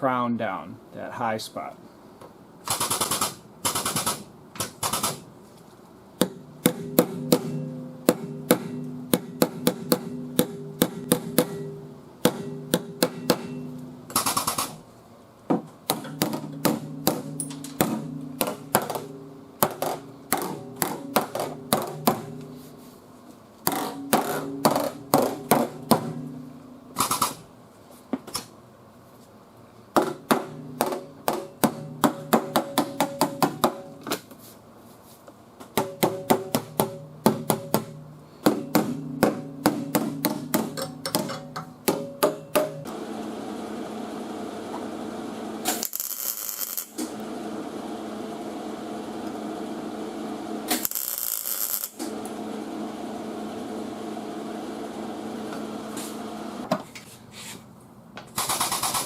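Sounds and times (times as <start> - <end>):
hammer striking steel panel: 6.2 - 14.8, 15.6 - 22.6, 23.7 - 26.4, 30.0 - 34.0, 35.8 - 42.9
metal ringing hum: 6.4 - 9.2, 10.1 - 14.1, 16.1 - 22.8, 23.8 - 27.0.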